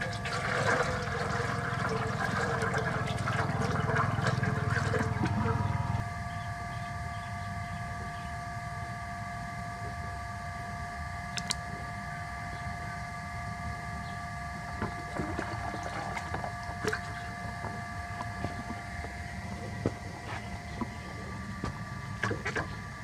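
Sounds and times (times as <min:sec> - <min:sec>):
running water splashing: 0:00.0 - 0:06.0, 0:15.1 - 0:17.2
steady multi-tone hum: 0:00.0 - 0:23.0.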